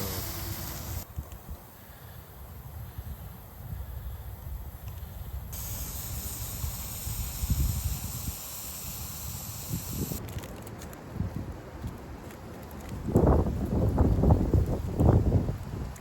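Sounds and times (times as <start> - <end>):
stove and water hissing: 0.0 - 2.2, 4.3 - 10.2
wind rumble on microphone: 2.4 - 8.4, 9.3 - 16.0.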